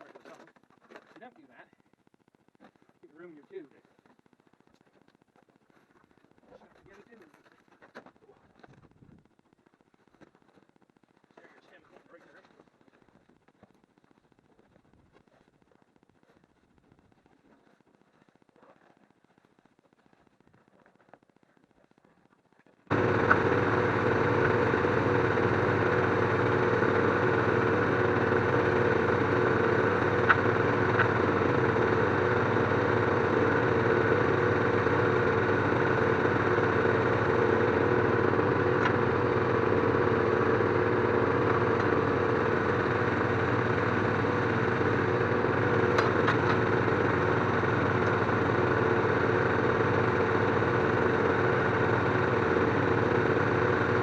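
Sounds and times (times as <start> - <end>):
engine idling: 22.9 - 54.0.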